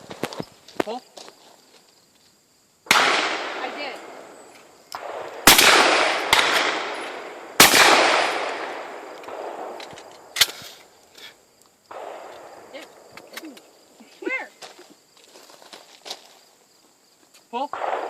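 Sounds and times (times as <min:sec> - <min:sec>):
sharp crack: 0:02.9 - 0:04.2, 0:04.9 - 0:10.8
shotgun shots echoing: 0:02.9 - 0:04.4, 0:05.0 - 0:10.6, 0:11.9 - 0:12.8, 0:17.7 - 0:18.0.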